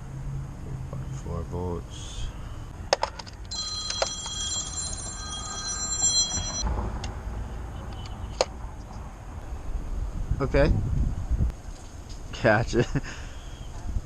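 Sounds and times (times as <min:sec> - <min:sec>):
electronic warbling ringing tone: 0:03.5 - 0:06.6.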